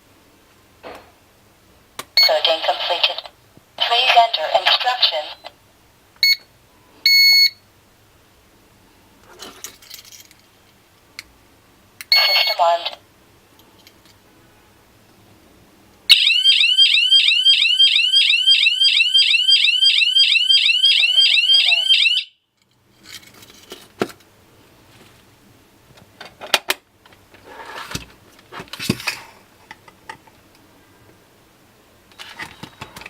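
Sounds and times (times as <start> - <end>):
warbling alarm siren: 16.1 - 22.4.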